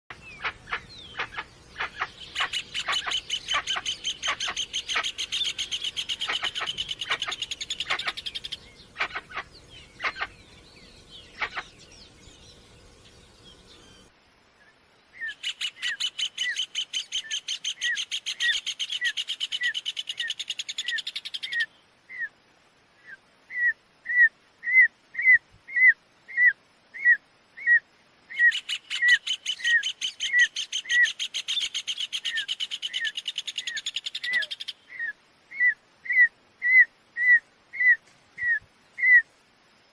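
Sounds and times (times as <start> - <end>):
birds trilling: 0.1 - 14.1, 23.5 - 39.2.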